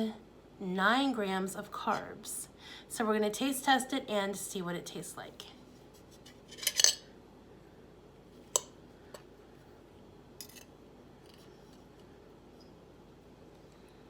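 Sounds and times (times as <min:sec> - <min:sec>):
cutlery scraping a plate: 0:06.4 - 0:07.1, 0:10.4 - 0:10.7
cutlery clink: 0:06.5 - 0:07.1.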